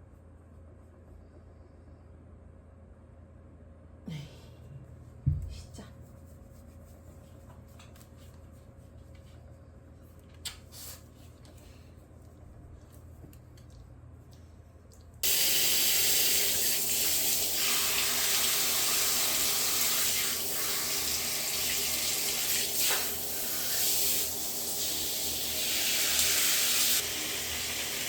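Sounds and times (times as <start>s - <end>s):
tap water running: 15.2s - 28.0s.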